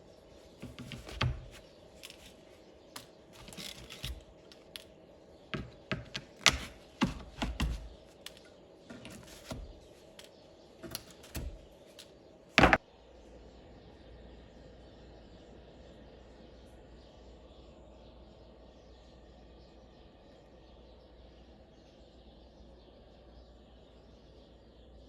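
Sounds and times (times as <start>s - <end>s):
dull thumps: 0.6s - 2.3s, 5.6s - 10.2s, 10.8s - 11.7s, 12.6s - 12.8s
light clicks and knocks: 0.6s - 2.3s, 5.6s - 12.8s.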